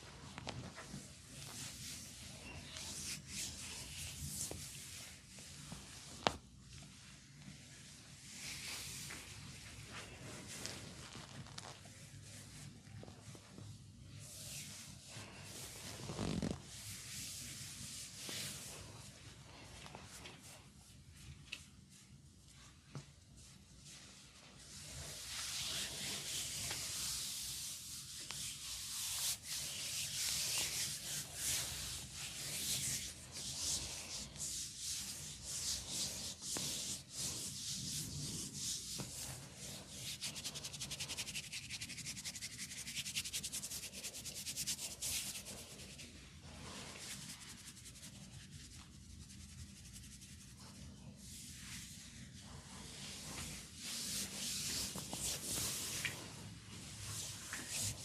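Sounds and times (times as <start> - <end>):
hands rubbing hair on scalp: 0.3 - 6.3, 23.4 - 58.0.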